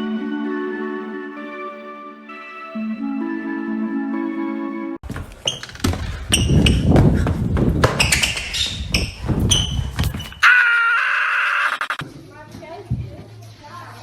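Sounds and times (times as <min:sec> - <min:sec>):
plucked background music: 0:00.0 - 0:05.0
knocks and thumps in a hall: 0:05.0 - 0:10.4
short high squeaks: 0:05.4 - 0:06.8, 0:08.0 - 0:12.0.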